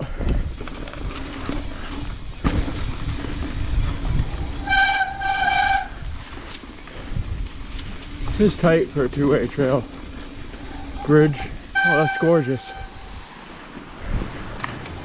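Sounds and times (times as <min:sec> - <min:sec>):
mountain bike tyres rumbling: 0:00.0 - 0:15.0
disc brake squeal: 0:10.5 - 0:13.0.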